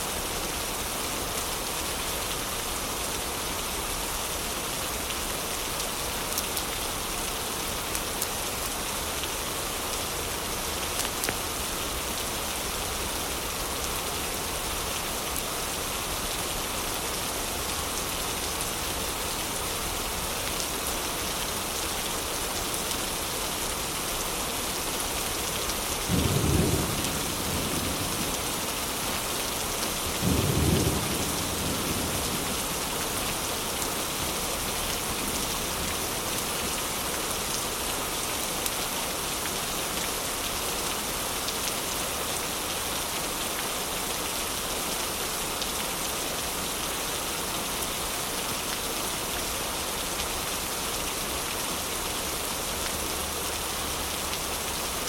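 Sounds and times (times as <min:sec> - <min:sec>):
heavy rain hissing: 0:00.0 - 0:38.4.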